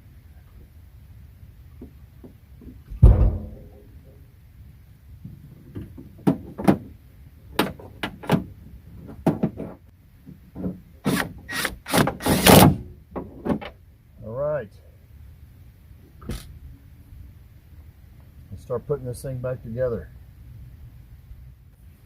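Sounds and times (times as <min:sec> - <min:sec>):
heavy thump on truck door: 0:02.9 - 0:03.8.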